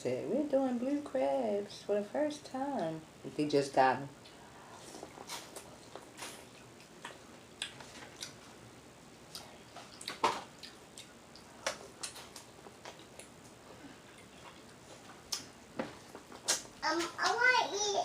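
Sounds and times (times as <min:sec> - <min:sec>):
wet mouth smacks: 0:16.4 - 0:16.7.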